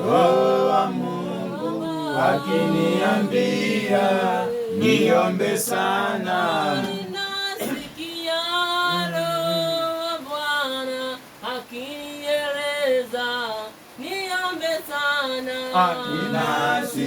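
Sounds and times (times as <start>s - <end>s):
choir singing worship chorus: 0.0s - 7.9s, 8.8s - 9.9s, 15.3s - 17.0s.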